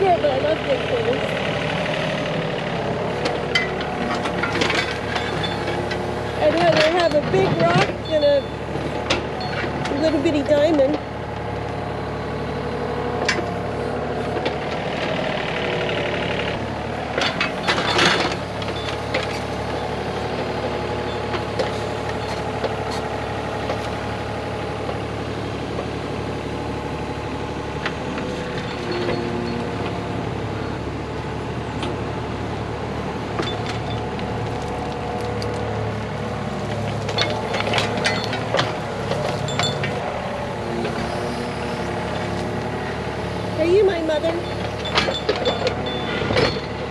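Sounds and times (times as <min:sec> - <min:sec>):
engine running steadily: 0:00.0 - 0:46.9
sharp knocks and clatters: 0:36.7 - 0:40.1.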